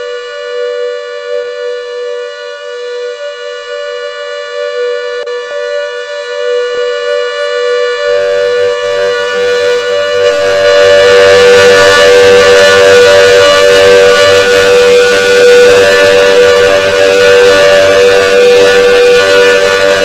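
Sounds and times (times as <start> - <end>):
siren steady tone: 0.0 - 20.0.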